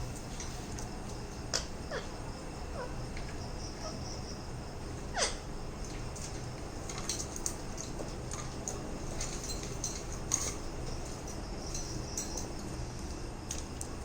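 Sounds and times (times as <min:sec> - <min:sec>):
parakeet call: 0:01.9 - 0:03.0, 0:03.7 - 0:04.4, 0:05.1 - 0:05.5.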